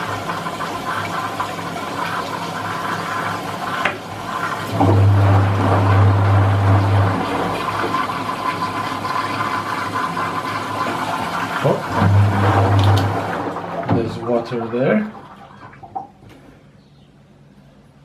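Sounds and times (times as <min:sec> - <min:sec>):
water pouring into washing machine: 0:00.0 - 0:16.2.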